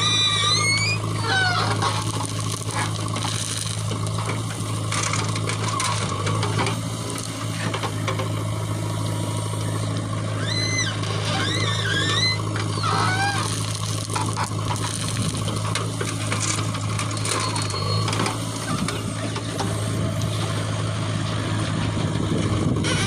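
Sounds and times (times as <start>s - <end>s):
high squeals: 0.0s - 3.7s, 9.6s - 19.4s
diesel engine running: 0.0s - 23.0s.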